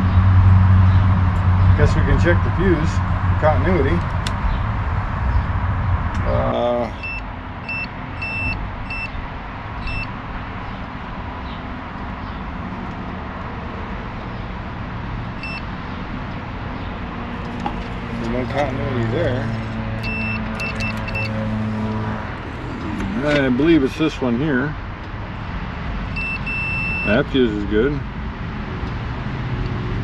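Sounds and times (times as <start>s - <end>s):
short high beeps: 20.0s - 21.6s, 26.2s - 27.2s.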